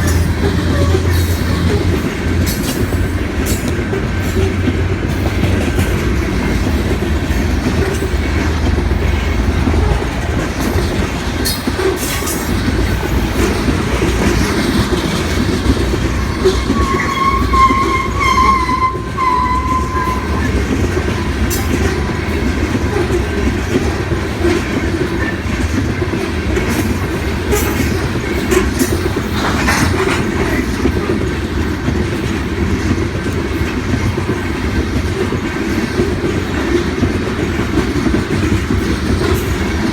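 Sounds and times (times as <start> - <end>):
train wheels rumbling on rails: 0.0 - 39.9
wheel squeal: 16.2 - 20.6.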